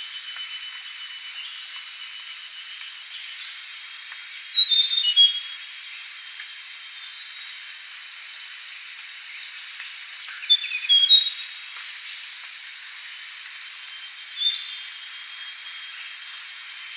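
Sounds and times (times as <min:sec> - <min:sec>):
steady background hiss: 0:00.0 - 0:16.9
warbler singing whistled notes: 0:03.0 - 0:03.8, 0:04.4 - 0:06.2, 0:06.9 - 0:12.3, 0:13.7 - 0:16.9.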